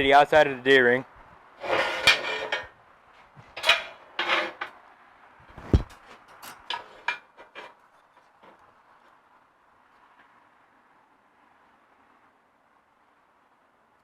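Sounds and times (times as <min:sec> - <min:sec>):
metal scraping: 0:01.6 - 0:02.7, 0:03.4 - 0:04.8, 0:06.4 - 0:07.8.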